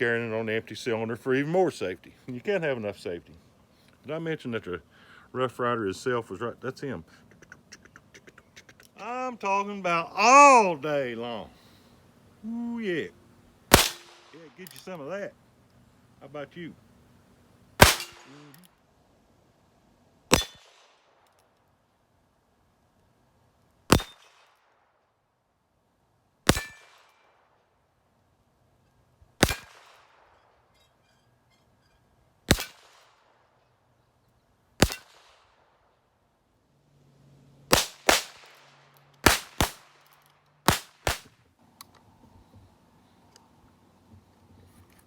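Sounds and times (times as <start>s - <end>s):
gunshots with ringing tail: 13.7s - 14.4s, 17.8s - 18.6s.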